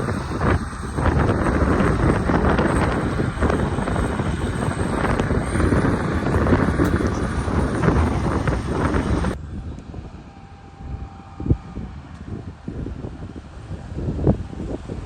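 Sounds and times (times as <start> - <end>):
diesel machine rumbling: 0.0 - 9.4
wind on microphone: 0.0 - 15.0.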